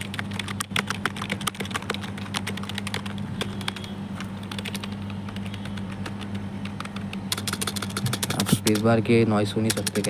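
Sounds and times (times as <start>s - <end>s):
keyboard key clicks: 0.0s - 8.9s, 9.6s - 10.0s.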